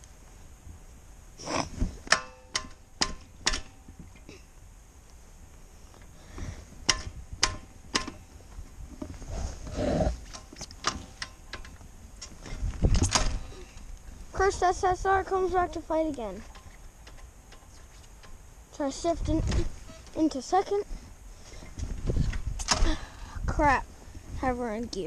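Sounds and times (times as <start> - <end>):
metallic clanks and knocks: 2.1 - 4.1, 6.9 - 8.3.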